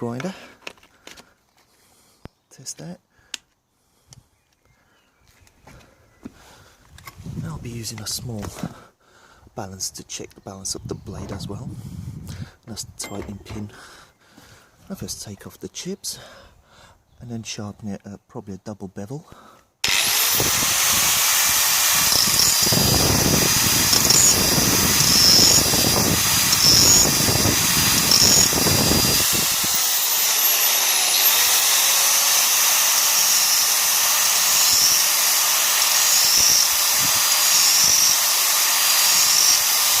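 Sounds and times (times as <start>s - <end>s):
angle grinder grinding steel: 19.8s - 40.0s.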